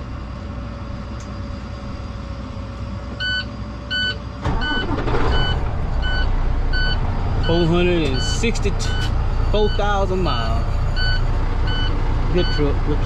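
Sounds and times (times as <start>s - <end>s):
diesel truck engine idling: 0.0s - 13.0s
air system cycling: 4.0s - 12.7s
warning beeper: 4.5s - 12.7s.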